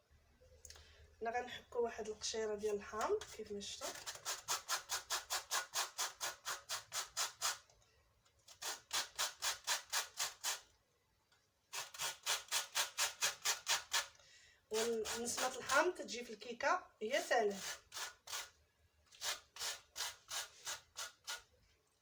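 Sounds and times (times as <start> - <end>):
lemon peel grated on grater: 3.9 - 7.7, 14.8 - 15.9.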